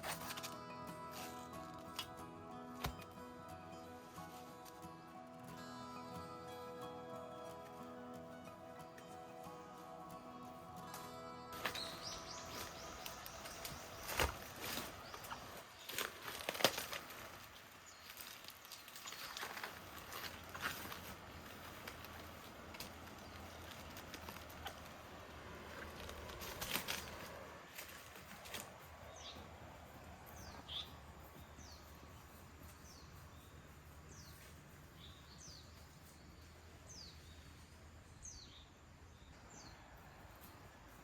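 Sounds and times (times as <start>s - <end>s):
bird chirping: 8.3s - 16.1s, 28.8s - 39.8s.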